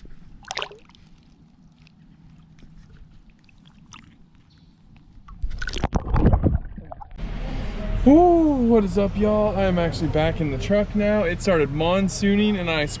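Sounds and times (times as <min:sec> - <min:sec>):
water sloshing around a kayak: 0:00.0 - 0:05.8
faint water drips: 0:00.1 - 0:05.7.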